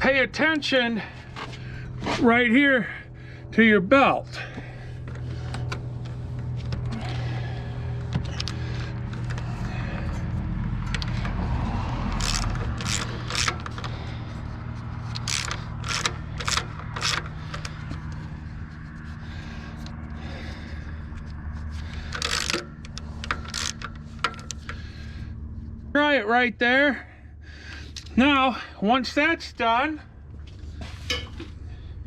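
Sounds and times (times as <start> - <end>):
low hum: 0.0 - 32.0
wrench clicking: 12.1 - 14.0, 15.1 - 17.7, 21.9 - 24.8.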